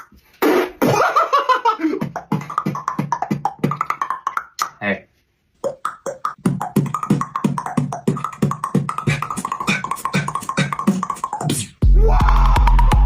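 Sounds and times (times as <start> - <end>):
beatboxing: 1.9 - 4.8, 5.6 - 13.0.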